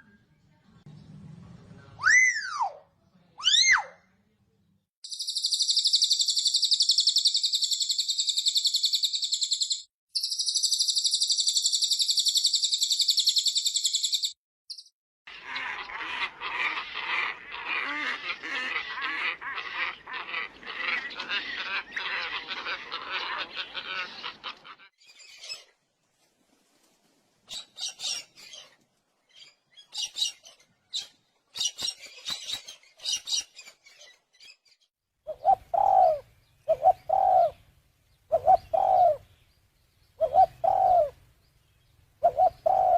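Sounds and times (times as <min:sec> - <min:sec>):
chattering birdsong: 0:04.2 - 0:25.8, 0:27.5 - 0:42.9.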